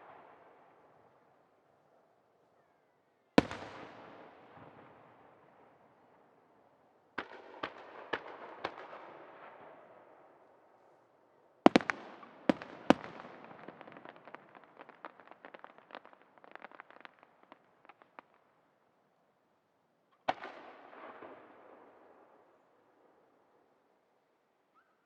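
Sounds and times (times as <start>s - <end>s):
rapid small firework pops: 7.2s - 9.8s, 11.7s - 18.6s, 20.1s - 21.6s.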